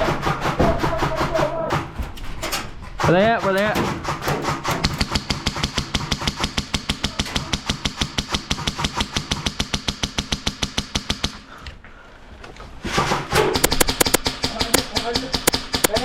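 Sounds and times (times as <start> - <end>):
airsoft gun full-auto firing: 4.4 - 11.5, 13.3 - 16.0.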